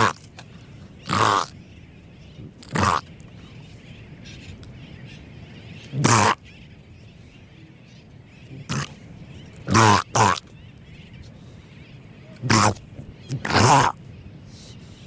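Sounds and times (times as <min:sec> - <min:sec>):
seal calling: 0:00.0 - 0:01.6, 0:02.4 - 0:03.5, 0:05.8 - 0:06.8, 0:08.4 - 0:10.6, 0:12.2 - 0:15.0.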